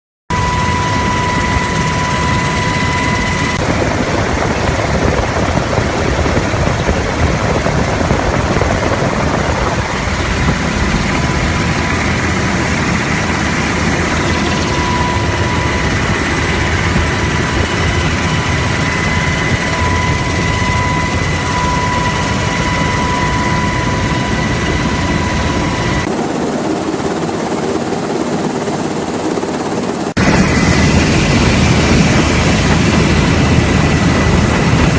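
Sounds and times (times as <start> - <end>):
steady high tone: 0.3 - 3.6, 10.0 - 34.6
helicopter rotor and engine noise: 0.3 - 34.9.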